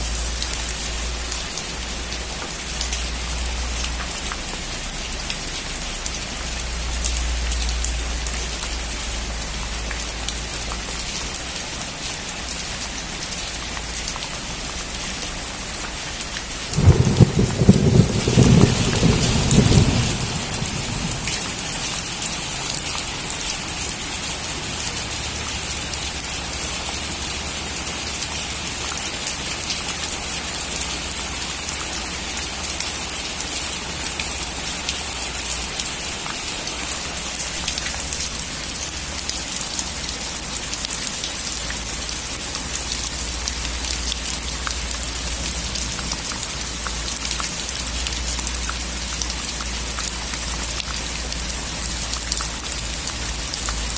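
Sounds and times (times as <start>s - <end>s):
heavy rain on a metal roof: 0.0s - 53.9s
low thunder rumble: 16.7s - 22.1s.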